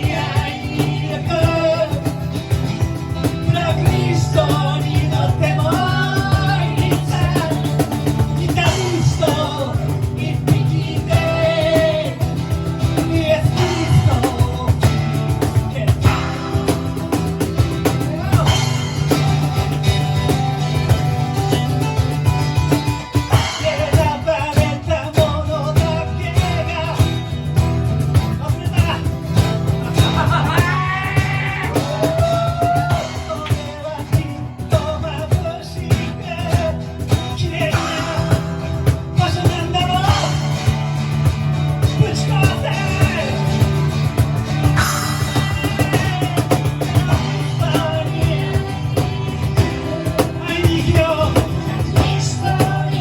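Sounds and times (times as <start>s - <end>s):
rock band playing: 0.0s - 53.0s
person singing: 3.4s - 17.1s, 29.8s - 40.6s, 44.8s - 53.0s.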